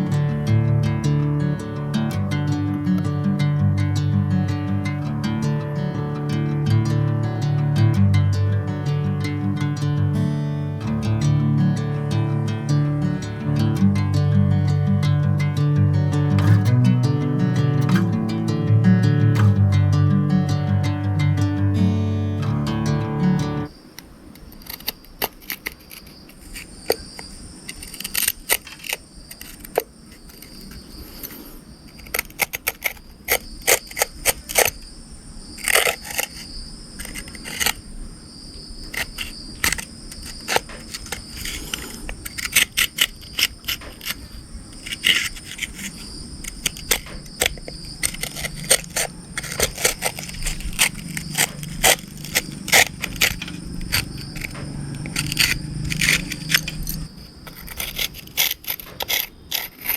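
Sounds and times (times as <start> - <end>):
mud scraped off toy car: 24.3 - 34.8, 35.6 - 37.9, 38.8 - 59.9.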